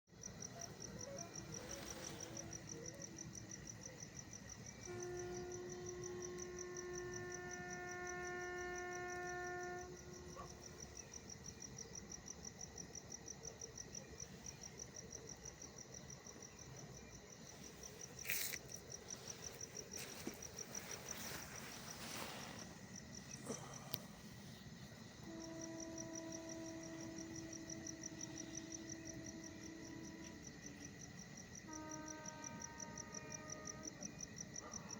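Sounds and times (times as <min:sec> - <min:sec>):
crickets chirping: 0:00.1 - 0:34.9
steady hum with overtones: 0:19.0 - 0:30.9.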